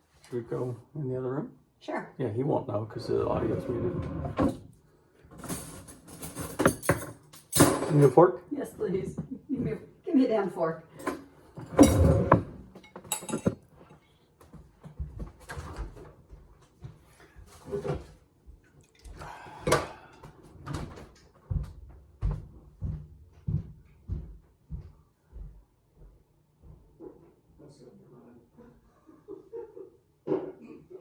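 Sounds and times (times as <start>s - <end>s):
knocks and clatters: 5.4s - 8.1s, 11.6s - 13.7s.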